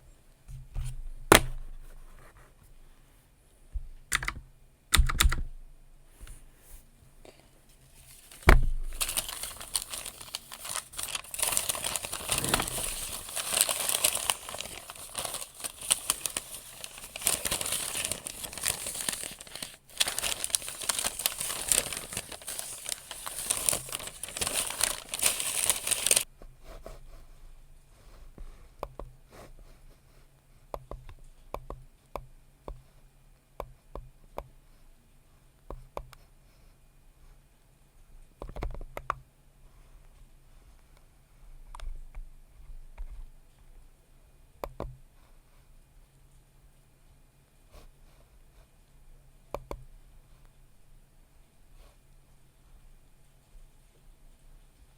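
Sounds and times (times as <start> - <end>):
paper crumpling: 7.7 - 26.3.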